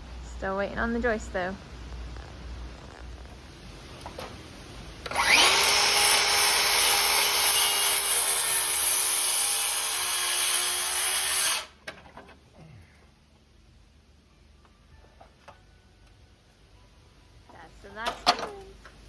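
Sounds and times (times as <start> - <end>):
power tool motor whine: 5.0 - 11.8.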